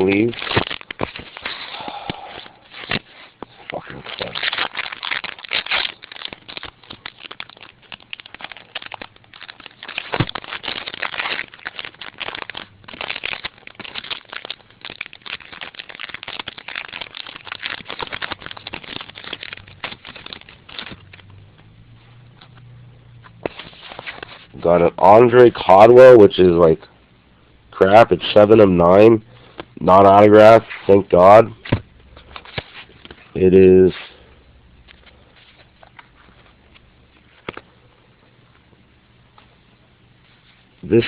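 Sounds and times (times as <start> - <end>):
card pack wrapper crinkling: 0.0 - 21.7, 29.4 - 37.8.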